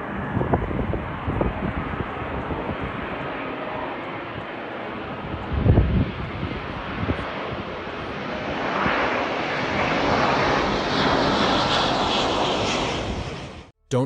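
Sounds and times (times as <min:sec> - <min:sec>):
airliner engines roaring: 0:00.0 - 0:14.0.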